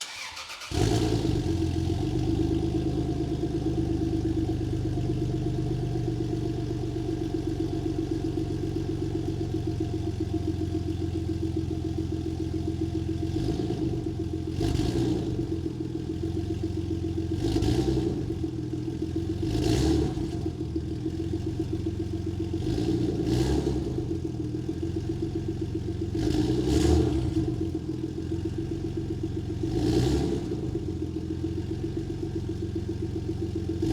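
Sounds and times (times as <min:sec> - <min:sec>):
car exhaust idling: 0:00.8 - 0:19.6, 0:20.2 - 0:23.1, 0:23.8 - 0:26.3, 0:30.5 - 0:33.9.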